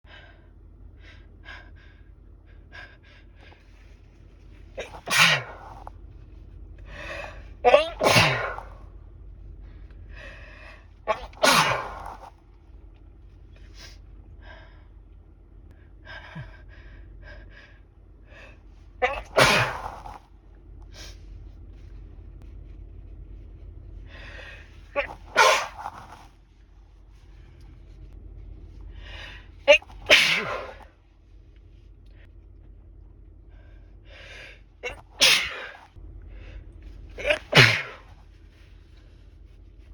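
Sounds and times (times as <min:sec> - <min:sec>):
person sneezing: 0:04.8 - 0:05.9, 0:07.2 - 0:08.9, 0:11.1 - 0:12.3, 0:19.0 - 0:20.2, 0:24.9 - 0:26.3, 0:29.6 - 0:30.8, 0:34.8 - 0:35.9, 0:37.2 - 0:38.2
breathy in-breath: 0:09.6 - 0:12.4, 0:24.1 - 0:26.2, 0:28.9 - 0:29.6, 0:33.5 - 0:36.7.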